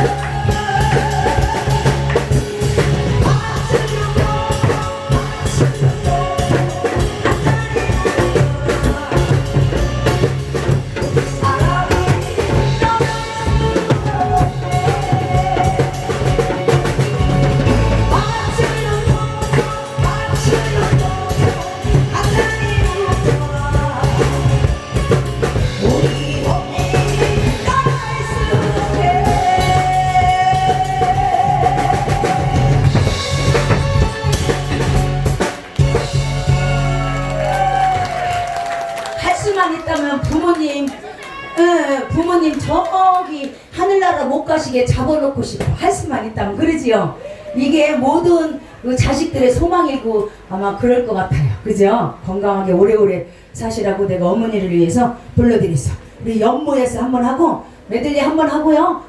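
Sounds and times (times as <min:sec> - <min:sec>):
backing track with drum beat: 0:00.0 - 0:43.7
person singing live: 0:00.0 - 0:43.7.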